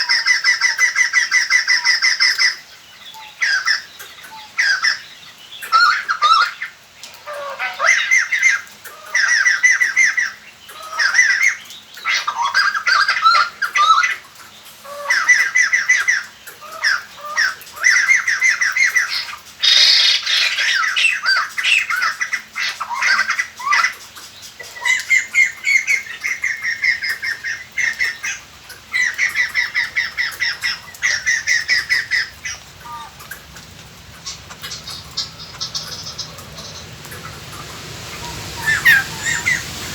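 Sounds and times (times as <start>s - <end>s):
birds cackling chorus: 22.1s - 39.9s.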